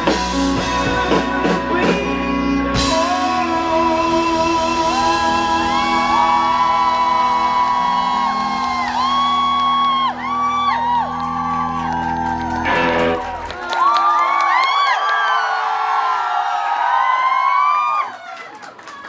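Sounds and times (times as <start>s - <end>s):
live rock band chords: 0.0s - 13.7s
sliding high held notes: 2.8s - 13.9s.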